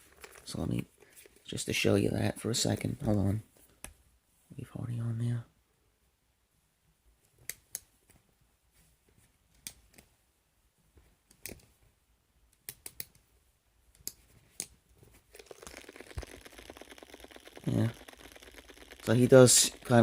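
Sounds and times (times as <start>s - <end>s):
winding key ratchet clicks: 15.4s - 20.0s.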